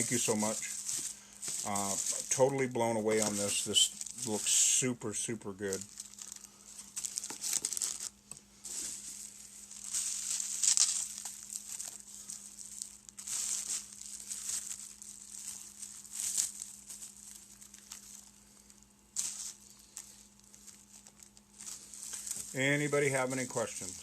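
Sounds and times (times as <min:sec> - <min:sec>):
faint low hum: 0:00.0 - 0:24.0
plastic packaging crinkling: 0:00.0 - 0:24.0.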